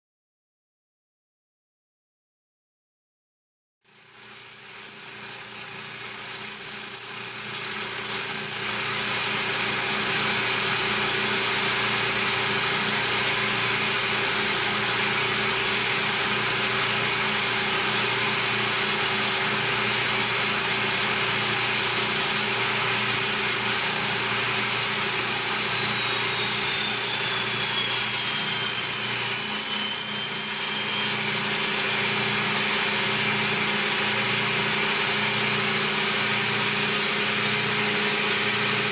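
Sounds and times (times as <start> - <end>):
high whine falling in pitch: 3.9 - 15.7
milling machine cutting hiss: 3.9 - 31.2.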